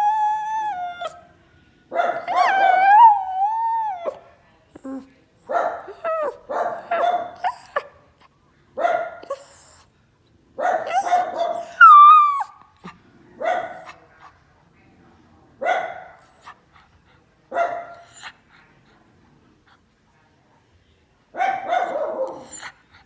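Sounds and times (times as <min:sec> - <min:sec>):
dog barking: 0:01.9 - 0:03.0, 0:05.5 - 0:08.0, 0:08.8 - 0:09.4, 0:10.6 - 0:12.4, 0:13.4 - 0:14.0, 0:15.6 - 0:16.2, 0:17.5 - 0:18.1, 0:21.4 - 0:22.6
dog yelping: 0:02.2 - 0:04.2, 0:10.8 - 0:12.6.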